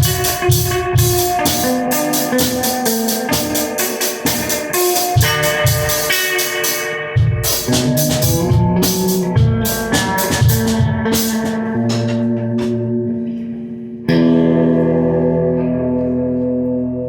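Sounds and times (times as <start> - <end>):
snare and cymbal hits: 0.0 - 12.8
electric guitar notes: 0.0 - 17.0
kick drum thumps: 7.2 - 12.8.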